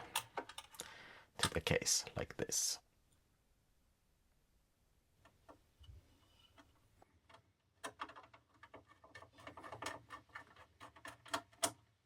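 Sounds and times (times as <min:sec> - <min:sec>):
small plastic parts clicking: 0:06.4 - 0:12.0.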